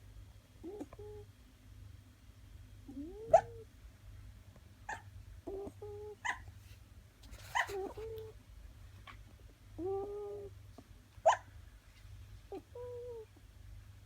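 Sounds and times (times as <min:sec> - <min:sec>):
puppy whimpering and yipping: 0:03.0 - 0:03.6, 0:07.4 - 0:08.3.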